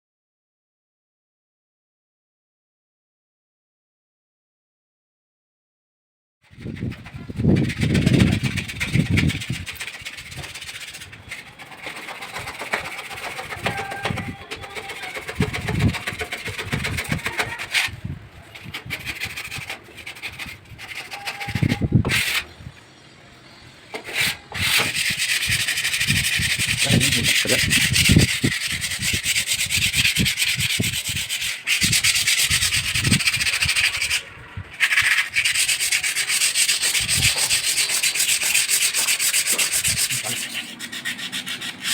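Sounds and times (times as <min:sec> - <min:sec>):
wood sanding: 0:06.8 - 0:22.5, 0:24.0 - 0:34.2, 0:34.8 - 0:41.9.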